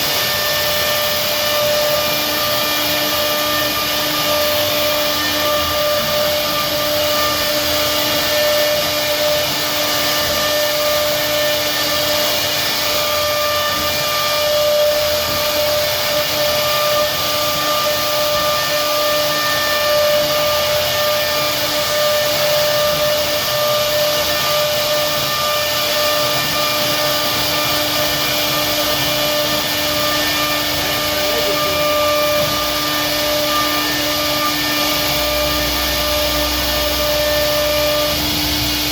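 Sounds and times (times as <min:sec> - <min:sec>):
cnc router spindle whine: 0:00.0 - 0:38.9
rushing cutting noise: 0:00.0 - 0:38.9.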